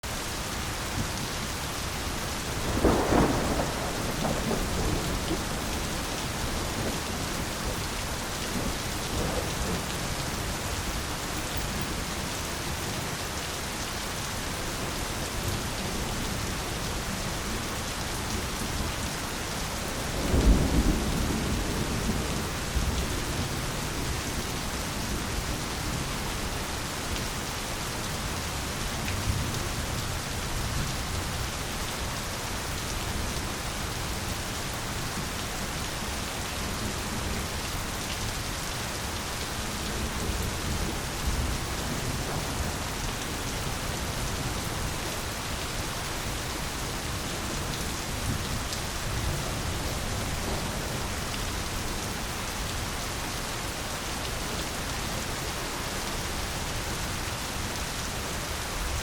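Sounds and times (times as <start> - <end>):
heavy rain on foliage: 0.0 - 59.0
thunder rumbling: 2.5 - 12.1, 19.9 - 23.8.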